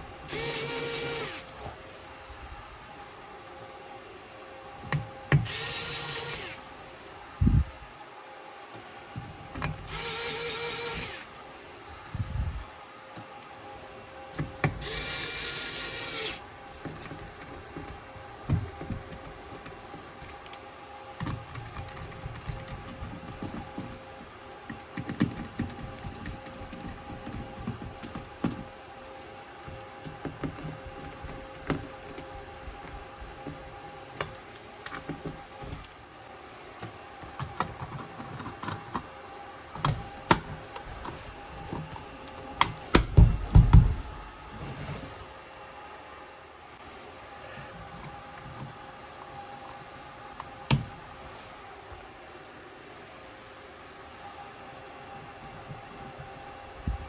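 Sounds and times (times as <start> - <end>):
power drill running: 0.3 - 1.5, 5.4 - 6.7, 9.9 - 11.4, 14.8 - 16.4.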